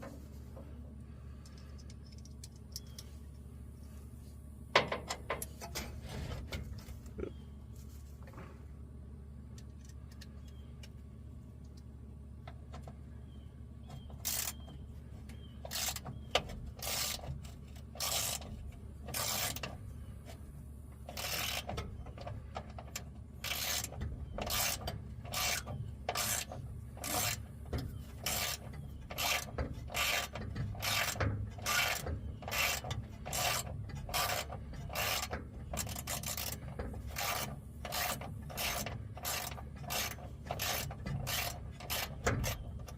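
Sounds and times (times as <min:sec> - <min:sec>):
low hum: 0:00.0 - 0:42.9
hand ratchet clicking: 0:14.2 - 0:14.6, 0:15.6 - 0:16.1, 0:16.8 - 0:19.7, 0:21.1 - 0:21.8, 0:22.6 - 0:42.9.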